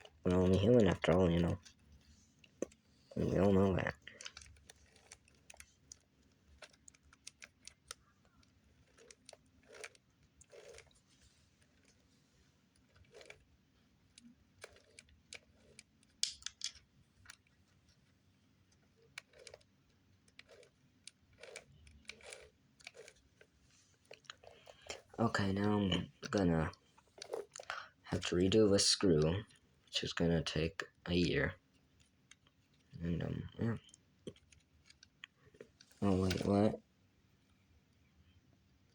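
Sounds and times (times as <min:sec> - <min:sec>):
small parts clicking: 0:00.0 - 0:12.1, 0:12.7 - 0:18.1, 0:18.7 - 0:28.4.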